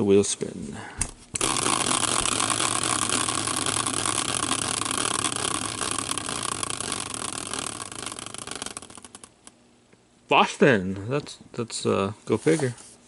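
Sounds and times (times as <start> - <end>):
prize wheel clicking: 1.4 - 9.5.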